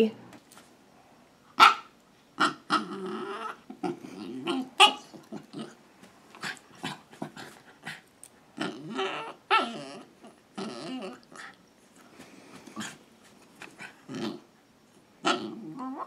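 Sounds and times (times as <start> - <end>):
puppy grumbling and yipping: 2.4 - 5.8, 8.6 - 11.6, 15.2 - 16.0.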